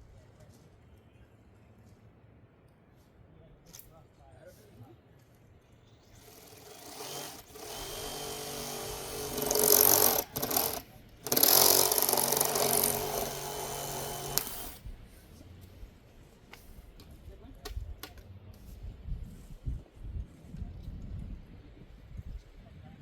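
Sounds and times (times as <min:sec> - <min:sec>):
handheld power tool motor: 0:06.2 - 0:14.8.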